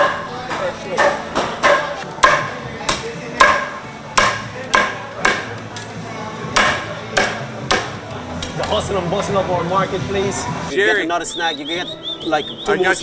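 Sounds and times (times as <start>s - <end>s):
cleaver chopping on wooden block: 1.0s - 5.5s, 6.6s - 8.0s.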